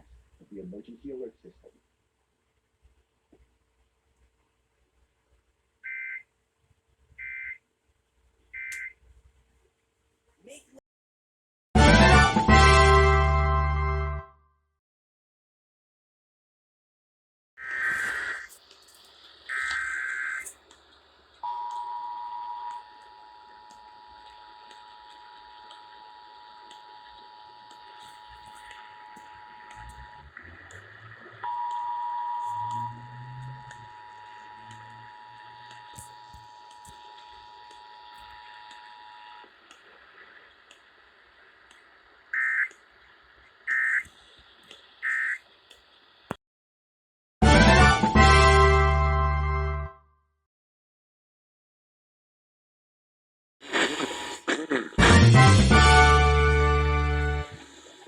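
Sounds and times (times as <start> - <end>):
click: 8.7 - 8.9
loud music: 11.8 - 14.3, 47.4 - 49.8, 55.0 - 57.6
screeching data bursts: 19.5 - 20.6, 32.4 - 39.5, 42.3 - 42.8, 43.7 - 44.1, 45.0 - 45.5
two-tone attention signal beep: 31.4 - 35.1
short digital data bursts: 42.4 - 42.7, 45.0 - 45.4.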